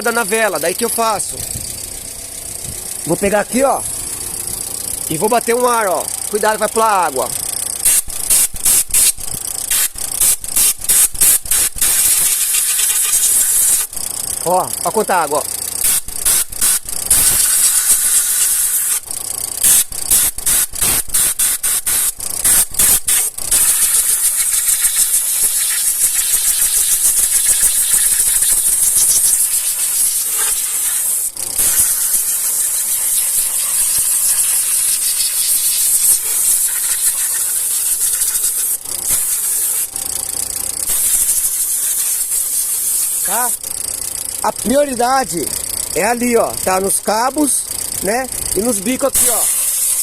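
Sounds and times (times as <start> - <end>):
compressed air blow gun hissing: 7.8 - 13.9, 15.8 - 19.0, 19.6 - 40.0, 40.9 - 43.6, 49.2 - 50.0.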